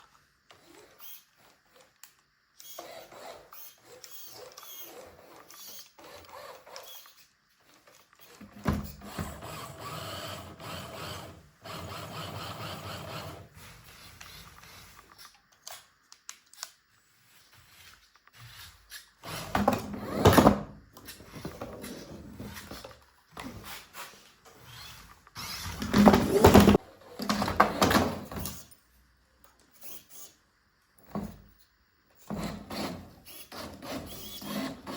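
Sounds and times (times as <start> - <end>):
toy car electric motors whirring: 0.0 - 28.8, 29.6 - 30.5, 31.5 - 34.9
knocks and scraping: 17.5 - 28.6.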